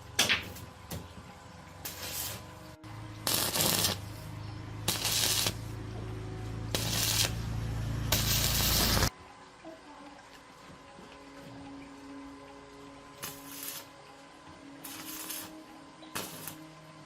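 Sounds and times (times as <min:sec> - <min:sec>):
machine humming: 0:00.0 - 0:17.0
loud hissing bursts: 0:03.2 - 0:05.7, 0:06.7 - 0:07.4, 0:08.1 - 0:09.1.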